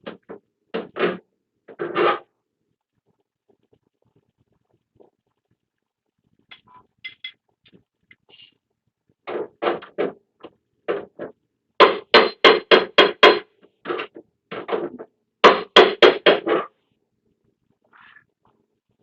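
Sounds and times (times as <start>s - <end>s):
hammer striking sheet metal: 11.8s - 14.0s, 15.4s - 16.7s.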